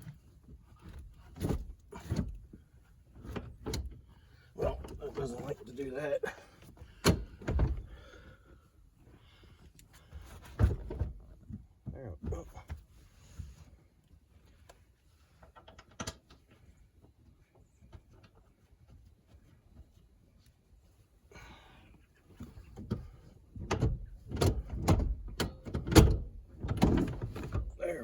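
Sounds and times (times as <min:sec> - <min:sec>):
knocks and clunks: 0:06.8 - 0:08.0, 0:10.4 - 0:12.9, 0:22.4 - 0:27.9.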